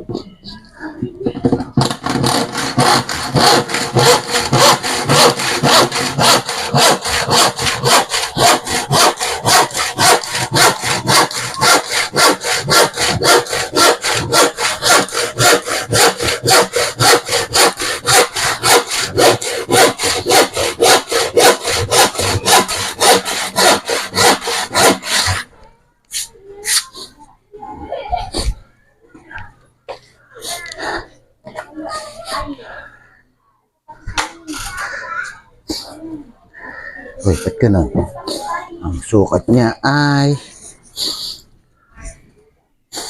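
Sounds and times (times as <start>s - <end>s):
hand saw cutting plywood: 1.8s - 25.5s.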